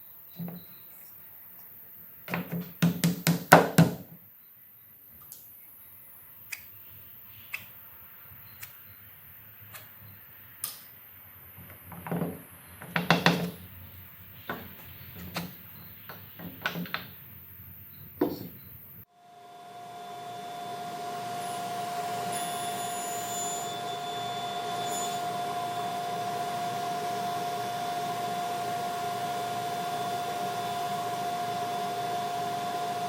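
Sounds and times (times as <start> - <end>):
wooden lumber knocking: 12.0 - 13.6.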